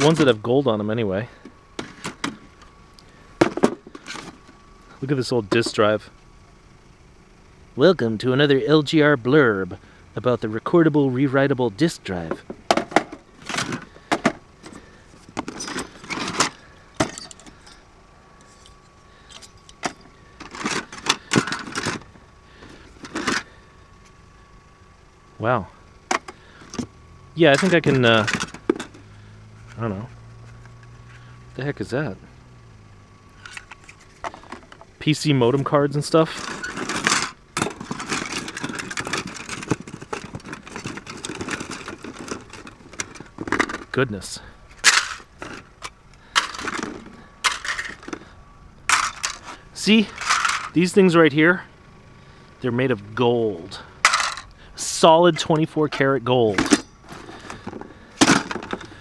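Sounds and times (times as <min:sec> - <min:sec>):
computer parts clattering: 0:00.0 - 0:00.4, 0:01.4 - 0:02.7, 0:03.4 - 0:04.6, 0:05.2 - 0:06.0, 0:12.2 - 0:17.8, 0:18.4 - 0:23.6, 0:26.1 - 0:29.1, 0:36.2 - 0:44.2, 0:44.8 - 0:51.0, 0:54.0 - 0:54.6, 0:56.4 - 0:59.0.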